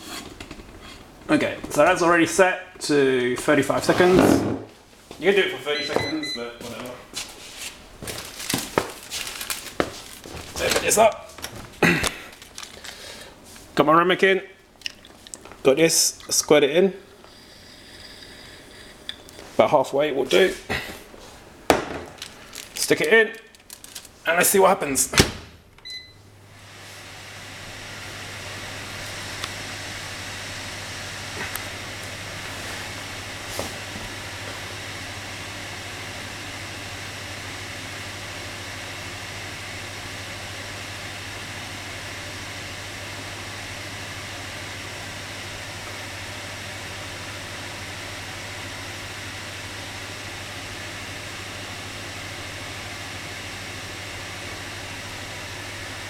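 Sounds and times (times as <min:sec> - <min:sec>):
low mains hum: 0:00.0 - 0:56.0
microwave oven humming: 0:05.6 - 0:07.2, 0:07.8 - 0:13.6, 0:24.9 - 0:56.0.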